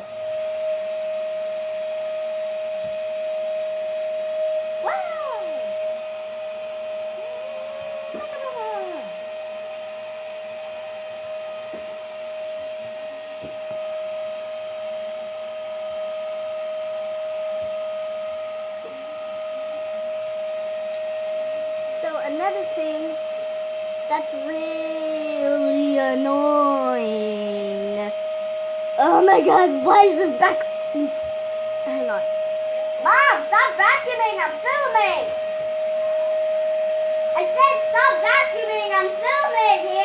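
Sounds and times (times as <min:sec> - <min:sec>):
vacuum cleaner running: 0:00.0 - 0:40.0
cat meowing: 0:04.8 - 0:05.5, 0:24.6 - 0:28.1.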